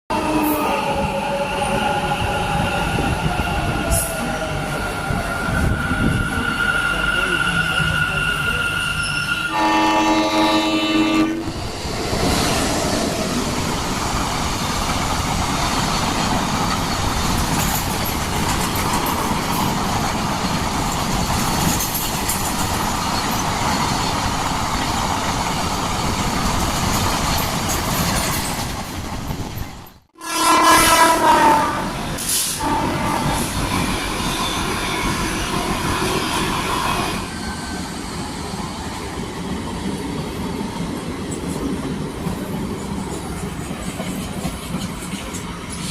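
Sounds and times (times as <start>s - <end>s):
train horn blowing: 0.1s - 1.8s, 9.0s - 11.5s, 30.2s - 33.6s
train rumbling on rails: 0.1s - 45.9s.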